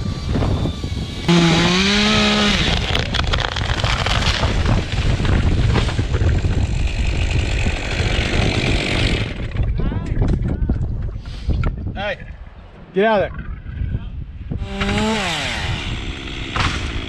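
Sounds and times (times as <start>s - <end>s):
engine revving: 0.8s - 3.3s, 6.7s - 9.5s, 14.6s - 17.0s.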